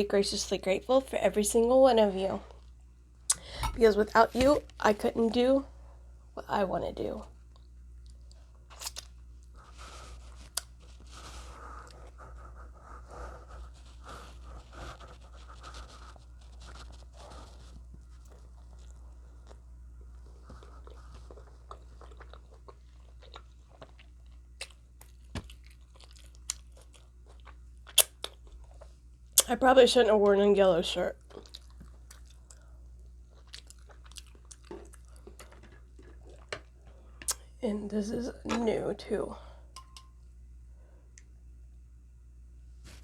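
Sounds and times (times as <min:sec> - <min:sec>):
person chewing food: 0:07.5 - 0:29.5, 0:31.2 - 0:37.5.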